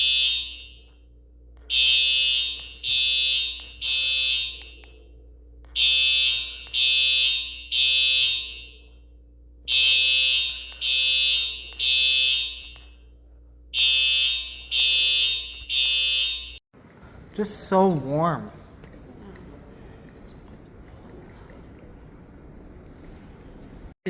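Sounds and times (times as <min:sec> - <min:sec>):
buzzy fire alarm horn blasts: 0:00.0 - 0:16.6.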